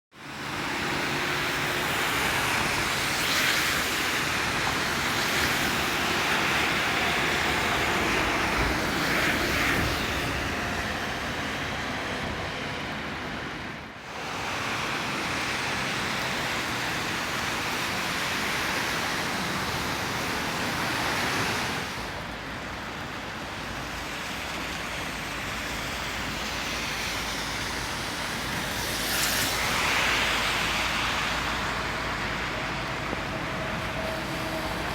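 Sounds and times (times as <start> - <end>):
distant traffic rushing: 0.2 - 34.9.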